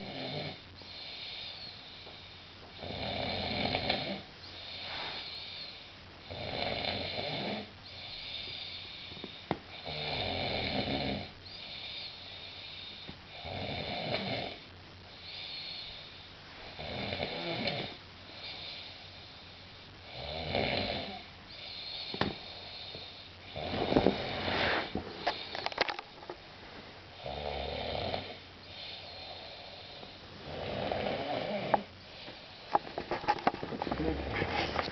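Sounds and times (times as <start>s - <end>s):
man snoring heavily: 0.0s - 1.5s, 2.8s - 4.3s, 6.3s - 8.8s, 9.7s - 12.1s, 12.7s - 14.6s, 16.7s - 18.0s, 20.1s - 25.4s, 27.2s - 31.9s
faint high breath sound: 0.8s - 2.6s, 4.4s - 6.0s, 11.4s - 13.2s, 15.1s - 16.7s.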